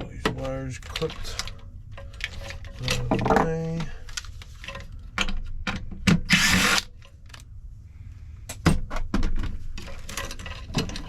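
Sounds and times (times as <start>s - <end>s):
metal parts clicking and knocking: 0.2s - 3.7s
power drill burst: 6.3s - 6.9s.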